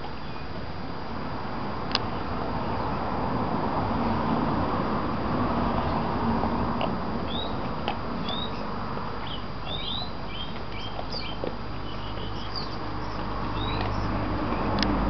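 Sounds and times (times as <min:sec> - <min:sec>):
small birds chirping: 0:00.0 - 0:00.6, 0:05.8 - 0:06.2, 0:06.8 - 0:15.0.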